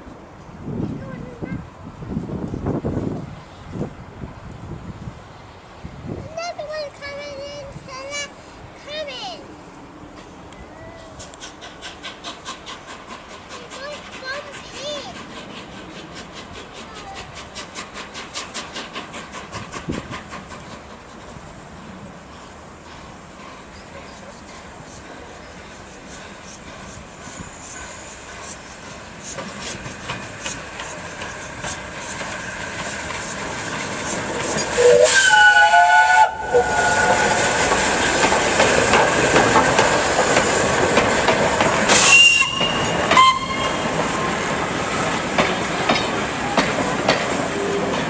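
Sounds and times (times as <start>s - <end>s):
train rumbling: 0.0s - 48.0s
train wheels squealing: 22.3s - 32.6s, 41.9s - 44.0s
loud shrill whistle tone: 42.0s - 43.7s.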